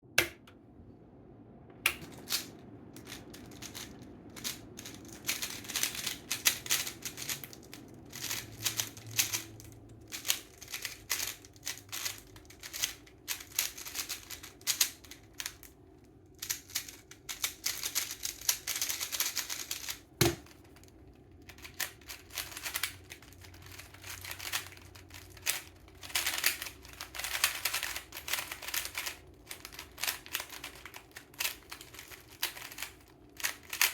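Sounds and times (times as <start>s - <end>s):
plastic puzzle cube clicking: 21.5s - 33.9s.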